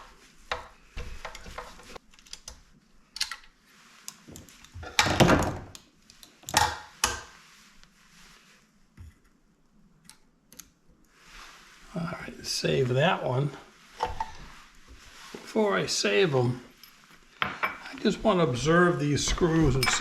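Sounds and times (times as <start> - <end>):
hand tool and metal parts clattering: 19.2 - 20.0.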